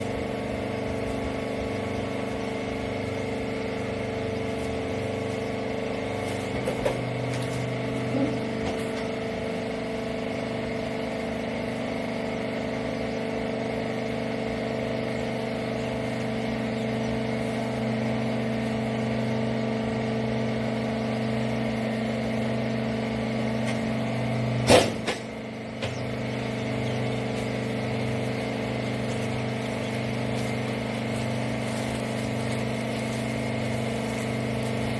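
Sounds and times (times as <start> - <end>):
baler machine hum: 0.0 - 34.9
loud sharp knock: 24.7 - 26.0.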